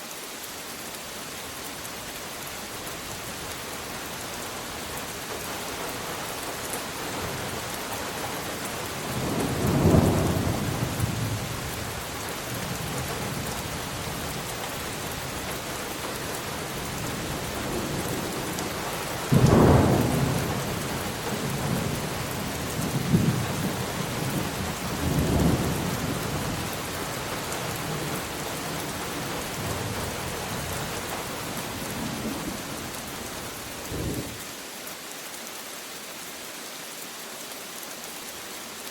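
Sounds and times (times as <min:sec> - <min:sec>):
rain falling: 0:00.0 - 0:38.9
thunder rumbling: 0:19.3 - 0:26.3.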